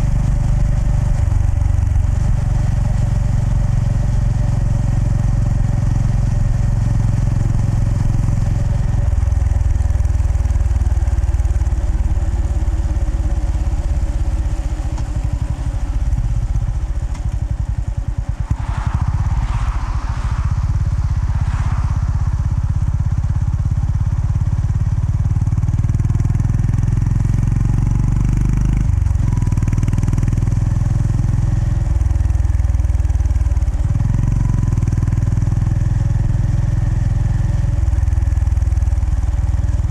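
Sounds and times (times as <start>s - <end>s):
motorcycle engine on the road: 0.0s - 39.9s
brief rushing noise: 17.0s - 24.6s.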